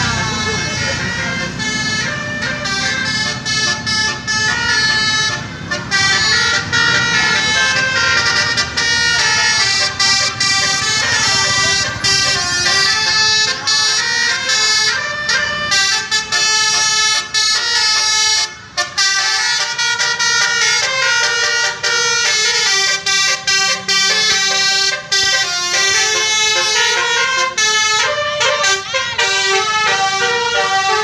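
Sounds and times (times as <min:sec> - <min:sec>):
air horns playing a tune: 0:00.0 - 0:31.0.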